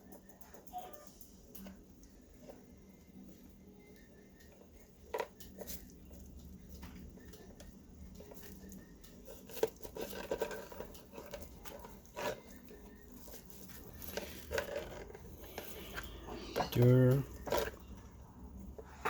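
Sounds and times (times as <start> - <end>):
plastic parts clicking and rattling: 4.5 - 18.0.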